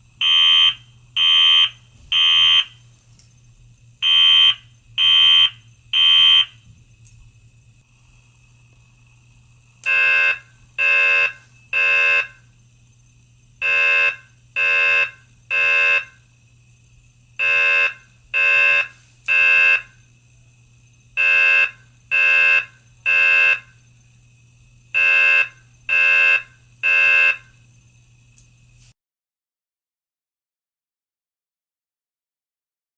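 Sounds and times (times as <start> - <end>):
fire alarm beeping: 0.2 - 2.8, 4.0 - 6.7, 9.8 - 12.5, 13.6 - 16.2, 17.4 - 20.1, 21.1 - 23.8, 24.9 - 27.6.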